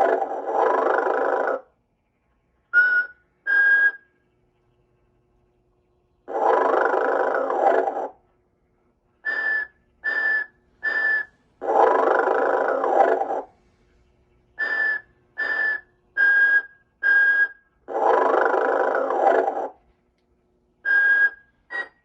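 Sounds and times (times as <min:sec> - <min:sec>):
toy figure snoring: 0:00.0 - 0:01.7, 0:06.3 - 0:08.2, 0:10.9 - 0:13.6, 0:17.9 - 0:19.8
short whistles: 0:02.8 - 0:04.2, 0:09.2 - 0:11.3, 0:14.6 - 0:17.6, 0:20.8 - 0:22.0.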